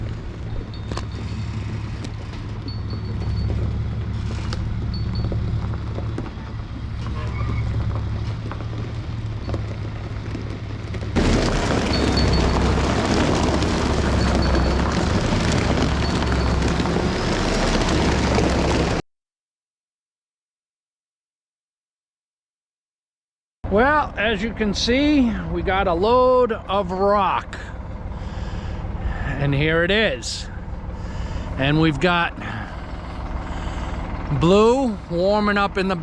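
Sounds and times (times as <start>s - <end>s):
heavy engine rumbling: 0.0s - 19.0s, 23.6s - 36.0s.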